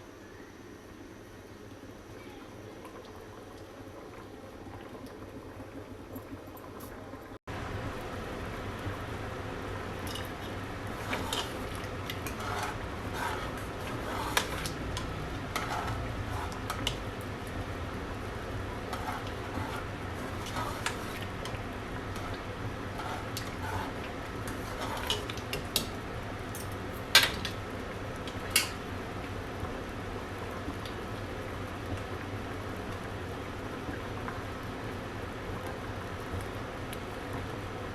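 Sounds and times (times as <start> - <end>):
metal utensil scraping a pot: 10.9 - 17.0, 18.9 - 21.3, 22.1 - 25.5.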